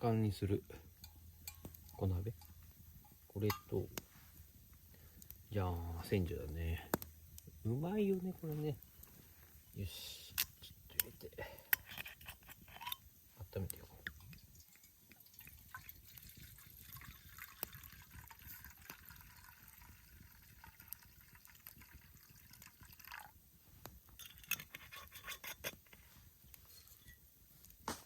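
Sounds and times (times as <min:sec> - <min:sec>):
liquid pouring into pot: 0:14.0 - 0:23.4.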